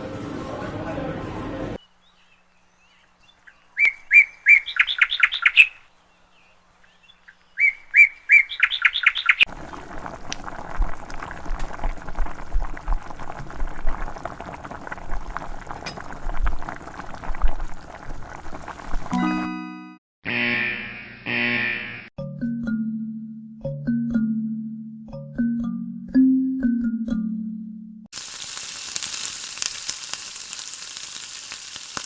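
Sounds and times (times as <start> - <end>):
songbird singing: 1.8 - 9.8.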